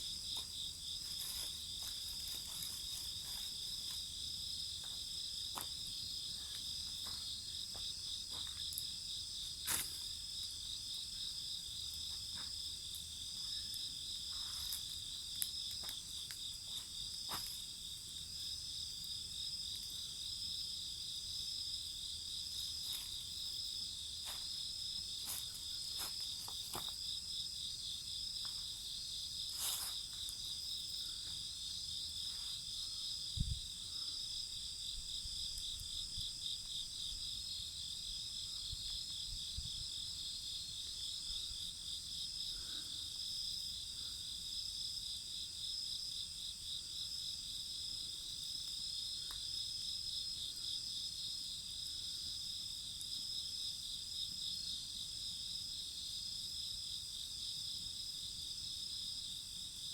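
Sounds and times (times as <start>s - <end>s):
crickets trilling: 0.0s - 59.9s
bonfire crackling and popping: 12.0s - 18.1s.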